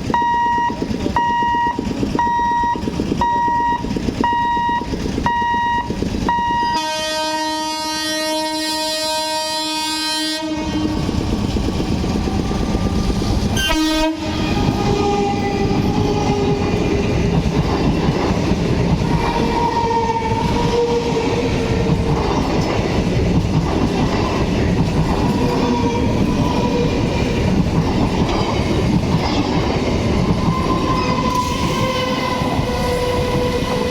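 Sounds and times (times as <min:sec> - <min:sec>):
train wheels rumbling on rails: 0:00.0 - 0:33.9
train horn blaring: 0:03.3 - 0:11.3, 0:12.6 - 0:16.9, 0:30.6 - 0:33.9.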